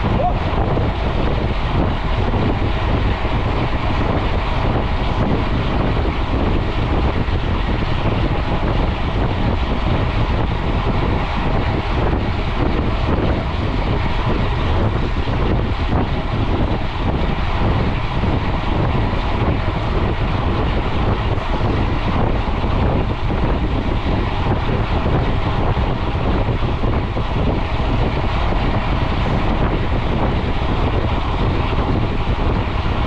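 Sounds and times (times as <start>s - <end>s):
wind rushing on microphone: 0.0s - 33.0s.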